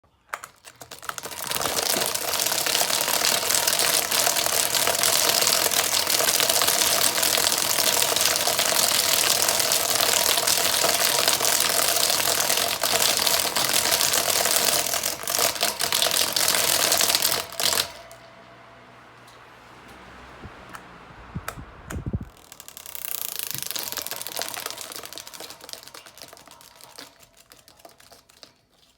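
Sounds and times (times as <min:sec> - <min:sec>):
fan clicking rattle: 0:00.6 - 0:28.9
faint hum: 0:17.4 - 0:22.8.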